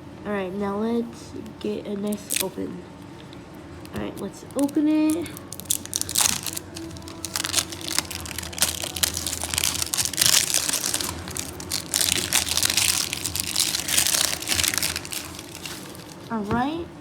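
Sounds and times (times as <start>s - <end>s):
plastic wrapping crinkling: 2.1s - 2.5s, 3.9s - 16.7s.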